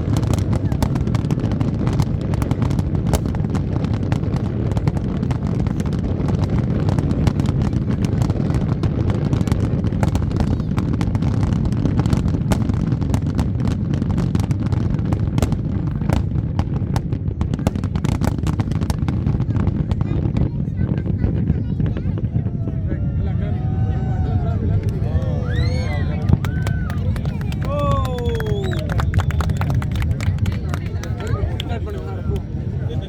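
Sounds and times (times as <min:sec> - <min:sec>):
low rumble of bursting shells: 0:00.0 - 0:32.8
fireworks bangs and crackles: 0:00.0 - 0:33.0.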